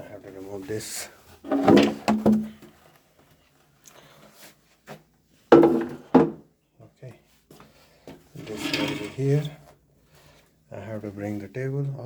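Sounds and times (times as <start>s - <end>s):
furniture scraping on floor: 1.4s - 2.2s, 8.4s - 9.6s.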